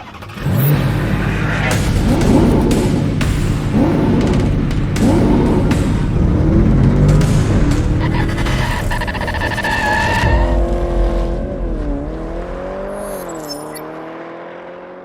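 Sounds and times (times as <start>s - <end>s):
car engine revving: 0.0s - 15.0s
screeching squeal: 8.0s - 10.9s, 12.9s - 13.8s.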